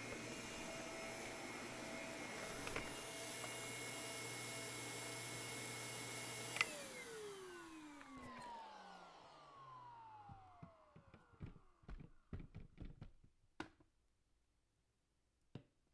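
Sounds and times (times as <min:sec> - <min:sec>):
vacuum cleaner motor running: 0:00.0 - 0:12.5
vacuum cleaner switch click: 0:06.3 - 0:08.6.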